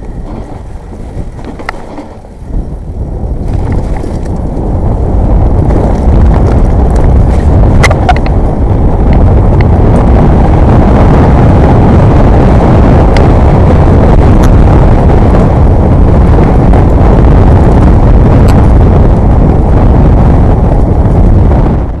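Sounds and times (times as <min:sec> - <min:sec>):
bike clicks and knocks: 0:00.0 - 0:02.3, 0:03.4 - 0:04.7, 0:05.6 - 0:08.4
wind buffeting microphone: 0:00.0 - 0:22.0.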